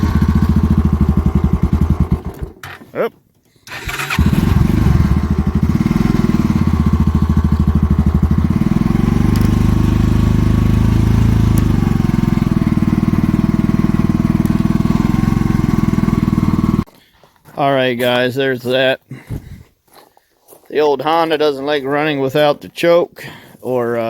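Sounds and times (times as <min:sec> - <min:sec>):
atv engine running: 0:00.0 - 0:02.7, 0:03.7 - 0:16.9.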